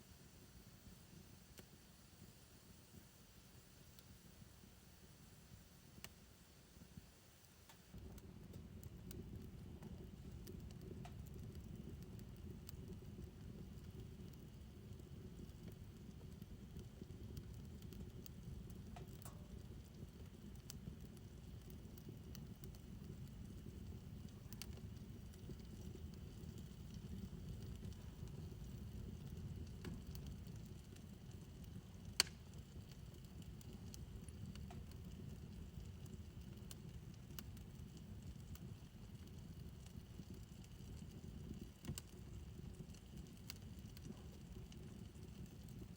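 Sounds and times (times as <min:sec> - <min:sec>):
fire crackling: 0:00.0 - 0:45.9
fire popping: 0:00.0 - 0:45.9
fire rumbling: 0:00.0 - 0:45.9.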